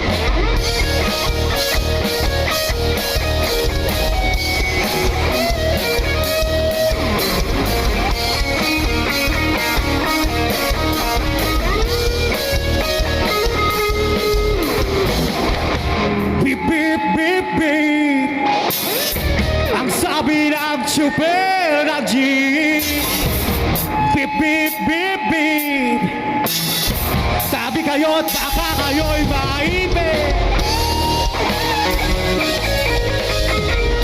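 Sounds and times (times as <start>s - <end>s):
melodic lines with bending notes: 0.0s - 16.4s, 26.4s - 34.0s
live band playing: 0.0s - 34.0s.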